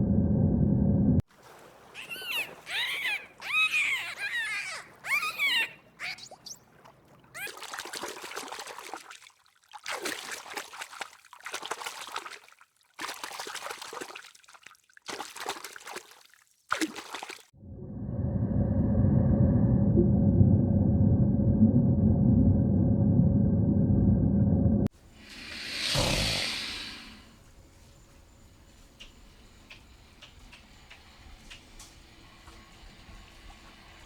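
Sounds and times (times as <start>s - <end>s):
splashing water: 1.3s - 17.6s.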